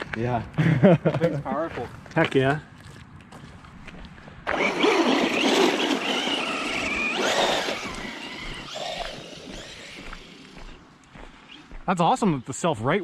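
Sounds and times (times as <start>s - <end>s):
wheels spinning: 4.4s - 10.8s
electric motor whining: 4.5s - 10.8s.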